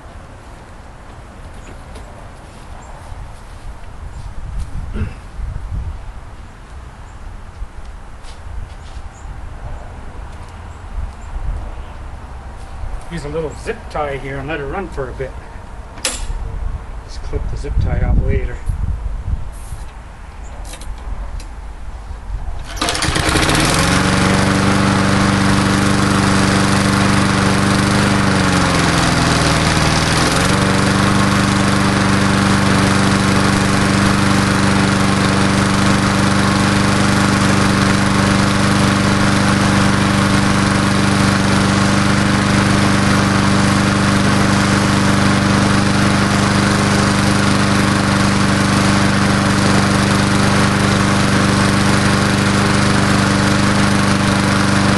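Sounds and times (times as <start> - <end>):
push mower engine running: 22.6 - 54.9.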